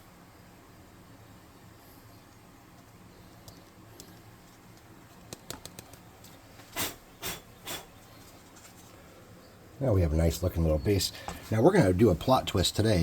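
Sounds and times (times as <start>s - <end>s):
breathy air puffs: 6.7s - 8.0s.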